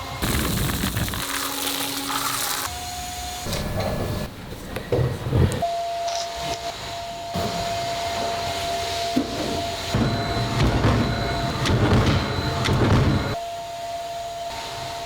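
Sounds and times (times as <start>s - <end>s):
machinery whine: 5.6s - 15.0s
knocks and clatter: 9.2s - 13.4s
machinery rumble: 9.4s - 13.4s.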